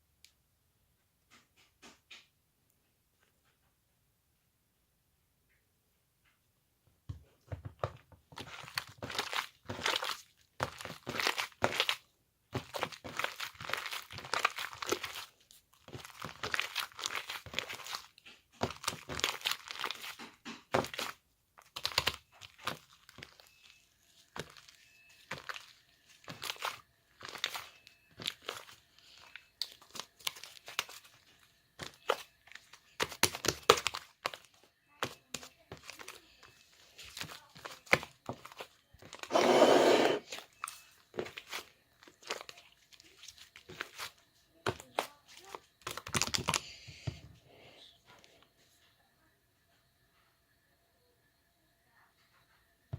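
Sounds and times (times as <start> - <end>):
slime crackling and crunching: 8.4 - 12.0, 12.6 - 31.2, 31.8 - 39.4
slime squish: 8.4 - 12.0, 20.8 - 31.2.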